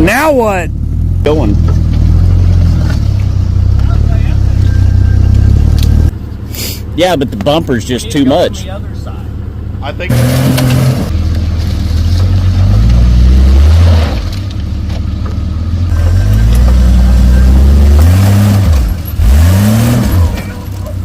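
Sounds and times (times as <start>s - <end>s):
engine revving hard: 10.1s - 11.1s, 12.5s - 14.3s, 15.9s - 20.5s.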